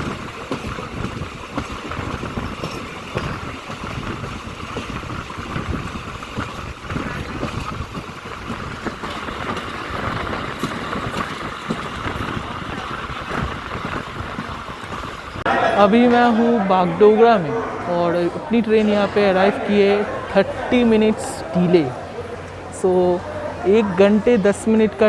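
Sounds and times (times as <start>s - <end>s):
train coach rumble: 0.0s - 15.5s
wheels clattering on track: 0.0s - 15.5s.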